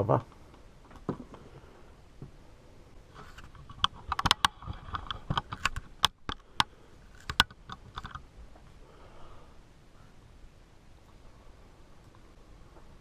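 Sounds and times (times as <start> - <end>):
small hard parts clicking: 3.2 - 8.3.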